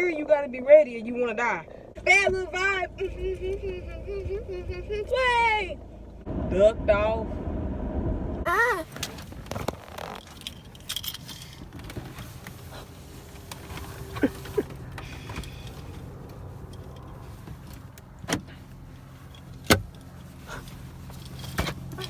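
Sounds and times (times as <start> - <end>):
engine and road hum: 0.0 - 22.0
metallic jingling: 10.2 - 11.6, 16.5 - 17.3.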